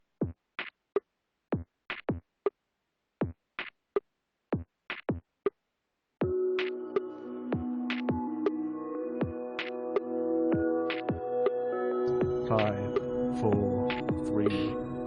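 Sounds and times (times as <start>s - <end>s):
drum machine beat: 6.2s - 6.8s, 7.6s - 8.3s, 10.5s - 11.5s, 12.1s - 14.8s.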